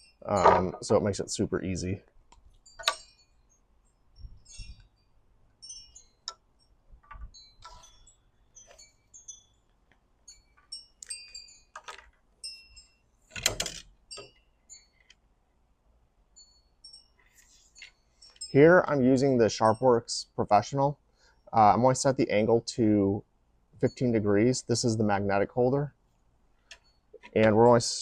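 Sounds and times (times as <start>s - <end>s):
light metallic clicks and clinks: 2.3s - 3.3s, 4.4s - 15.2s, 16.4s - 19.0s.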